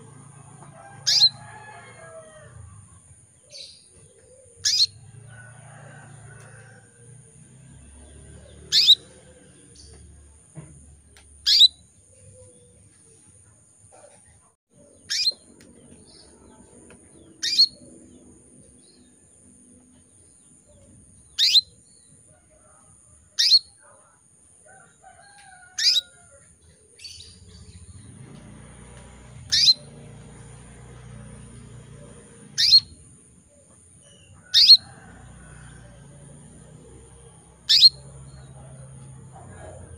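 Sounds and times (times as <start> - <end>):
canary tweeting: 1.0 - 1.4, 4.6 - 5.0, 8.2 - 10.1, 11.3 - 11.8, 15.0 - 16.3, 17.2 - 18.0, 21.3 - 21.7, 23.4 - 23.7, 29.5 - 30.0, 32.4 - 33.0, 34.1 - 34.8, 37.4 - 38.6.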